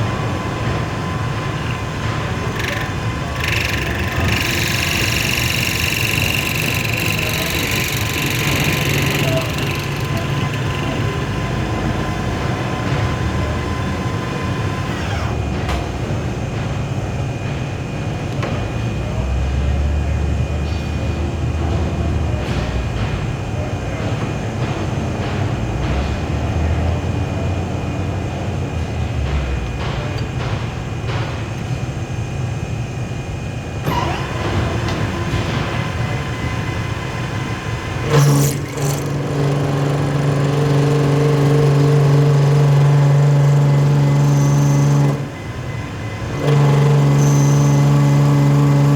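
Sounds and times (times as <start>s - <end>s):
lathe humming: 0.0s - 15.6s, 33.8s - 48.9s.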